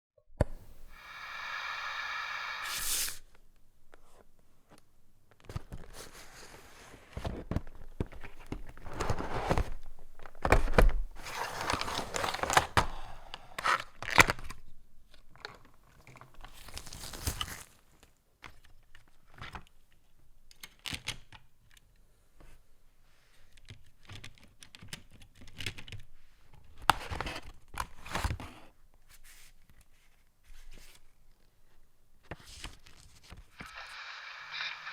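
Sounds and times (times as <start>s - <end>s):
cardboard and plastic rustling: 5.3s - 13.0s.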